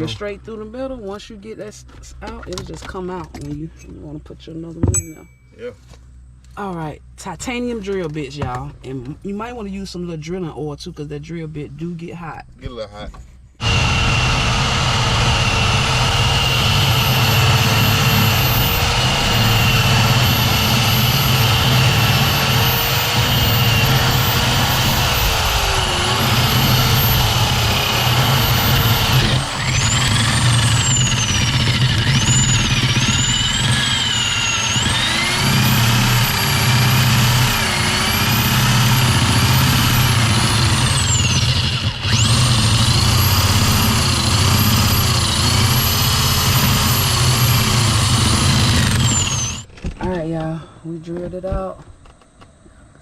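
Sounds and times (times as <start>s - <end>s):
power drill whining: 13.6s - 49.7s.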